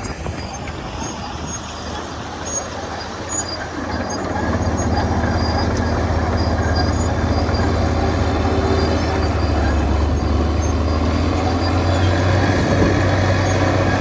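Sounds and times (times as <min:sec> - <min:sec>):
bulldozer diesel engine under load: 0:00.0 - 0:14.0
running gear rattling and squeaking: 0:00.0 - 0:14.0.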